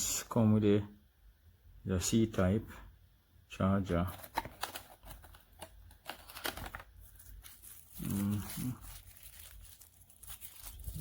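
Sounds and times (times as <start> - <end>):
packaging crinkling and rustling: 4.1 - 11.0.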